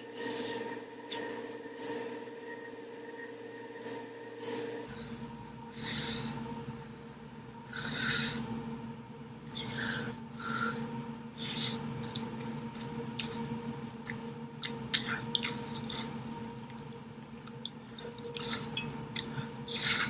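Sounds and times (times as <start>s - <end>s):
steady low hum: 0.0s - 20.0s
person slurping and breathing: 17.7s - 20.0s.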